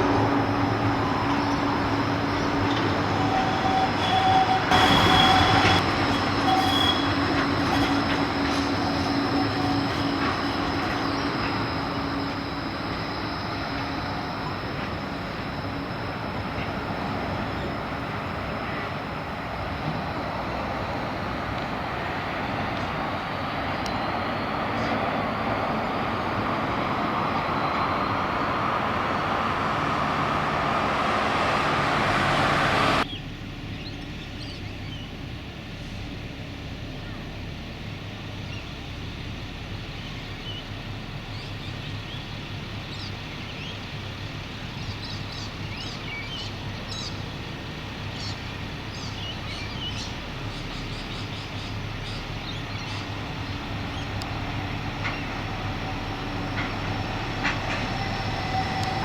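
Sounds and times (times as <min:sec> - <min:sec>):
tram rolling on rails: 0:00.0 - 0:59.0
high whine: 0:24.8 - 0:33.0.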